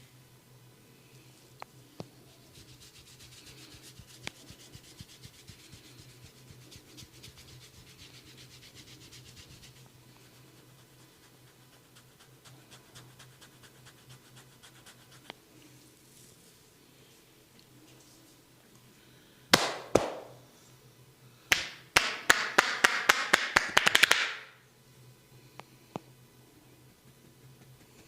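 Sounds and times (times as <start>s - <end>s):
hands scratching hair: 2.3s - 15.4s.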